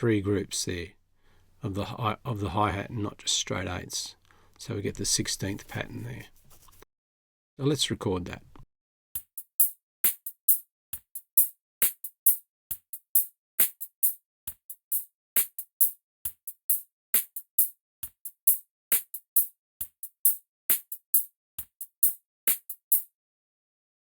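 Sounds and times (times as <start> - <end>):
crisp hi-hat hits: 9.2 - 23.1
kick and snare drums: 9.2 - 23.1.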